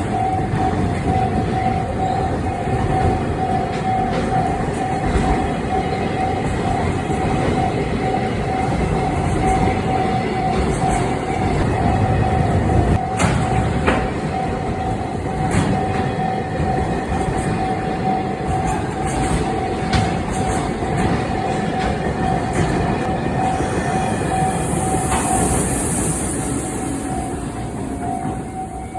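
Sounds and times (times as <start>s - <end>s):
crossing alarm ringing: 0.0s - 28.9s
train wheels clacking on rails: 0.0s - 28.9s
high hiss: 23.4s - 28.9s.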